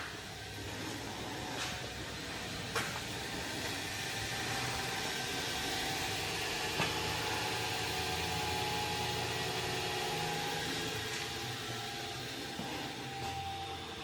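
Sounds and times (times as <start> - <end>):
bench grinder whirring: 0.0 - 14.0.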